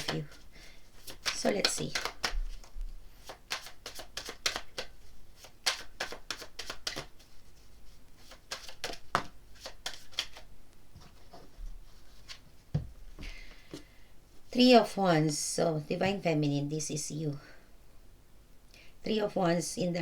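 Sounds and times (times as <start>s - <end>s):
cards being shuffled: 0.0s - 12.5s.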